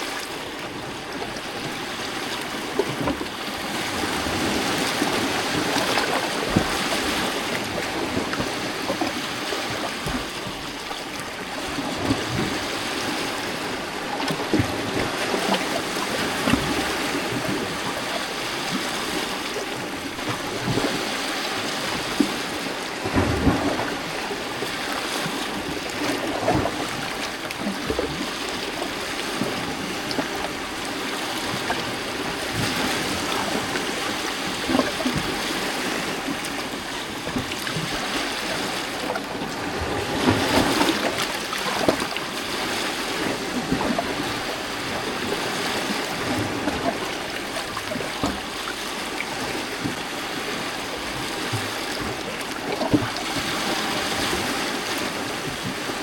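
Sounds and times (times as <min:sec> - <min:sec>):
waves lapping on rocky shore: 0:00.0 - 0:56.0.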